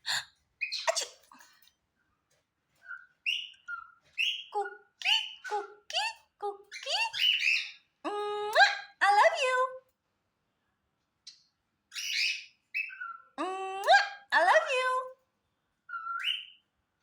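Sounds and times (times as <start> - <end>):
cockatiel chirping and whistling: 2.8 - 5.4, 12.0 - 13.3, 15.9 - 16.6.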